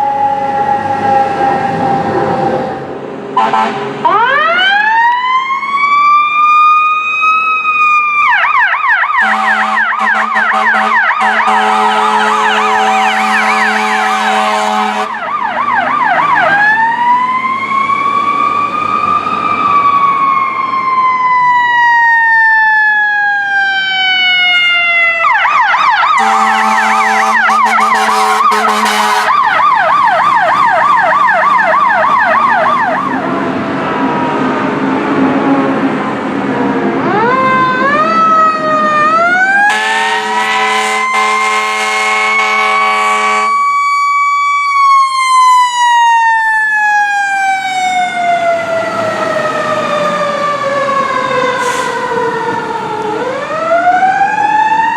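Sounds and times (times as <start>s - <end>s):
emergency siren wail and yelp: 0.0s - 54.9s
air horn blasts: 3.4s - 3.9s, 9.2s - 15.2s, 26.2s - 29.6s, 39.7s - 43.6s, 51.6s - 52.1s.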